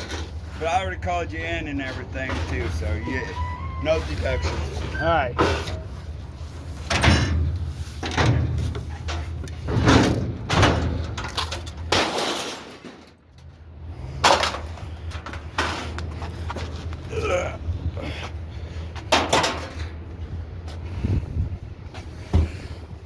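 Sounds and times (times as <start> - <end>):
scrap metal crashing and clanging: 6.6 - 16.0, 19.1 - 20.0.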